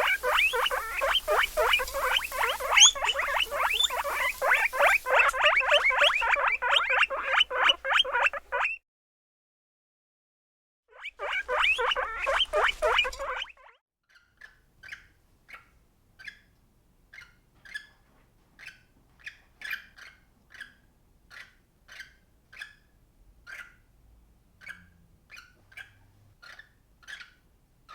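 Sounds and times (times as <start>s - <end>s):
small animal squeaking: 0.0s - 8.8s, 10.9s - 16.5s, 18.6s - 22.9s, 24.6s - 27.9s.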